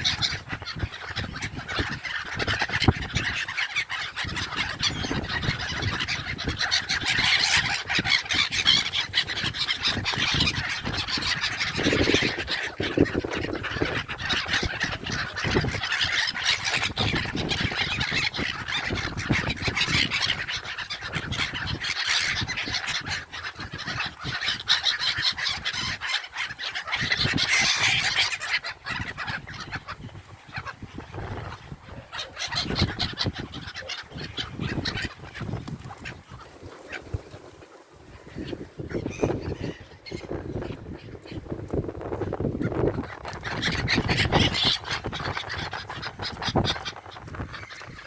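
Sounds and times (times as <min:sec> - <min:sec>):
seabirds calling: 0:00.0 - 0:48.0.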